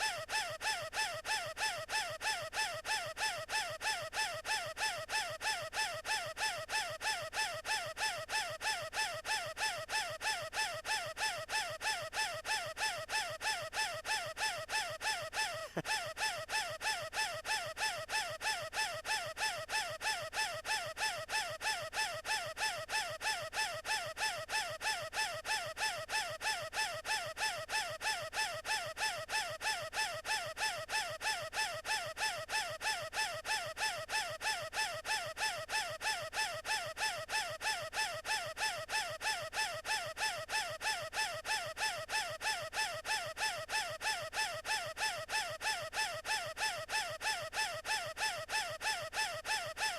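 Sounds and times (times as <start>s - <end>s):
cartoon character squeaky wheeze: 15.4s - 16.1s.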